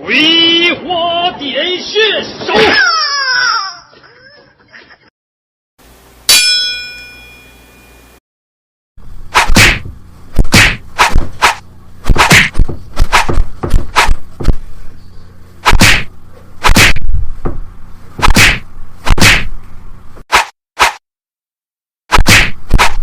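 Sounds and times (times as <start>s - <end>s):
punch and slap whacks: 9.3s - 14.6s, 15.6s - 17.1s, 18.2s - 19.5s, 20.3s - 21.0s, 22.1s - 23.0s.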